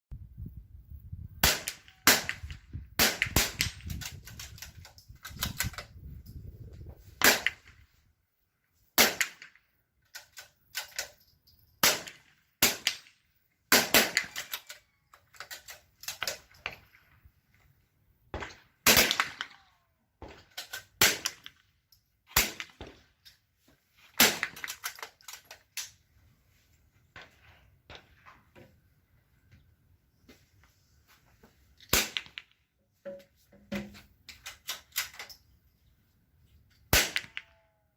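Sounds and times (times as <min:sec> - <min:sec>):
rifle shots: 0:01.4 - 0:04.1, 0:07.2 - 0:07.7, 0:09.0 - 0:09.5, 0:11.8 - 0:13.1, 0:13.7 - 0:14.6, 0:18.3 - 0:19.6, 0:20.2 - 0:21.5, 0:22.3 - 0:23.0, 0:24.2 - 0:24.8, 0:31.9 - 0:32.4, 0:36.9 - 0:37.6.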